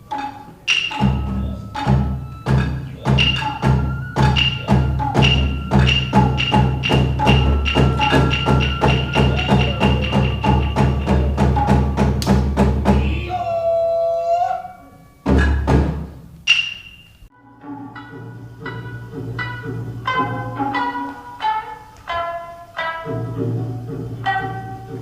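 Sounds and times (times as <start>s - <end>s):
held pitched note: 0.0s - 13.7s
wooden percussion strikes: 0.0s - 25.0s.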